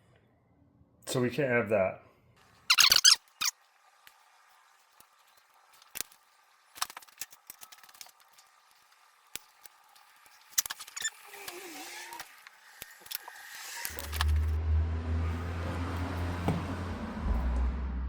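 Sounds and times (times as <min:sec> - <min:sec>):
wavering squeak: 0:02.7 - 0:03.5.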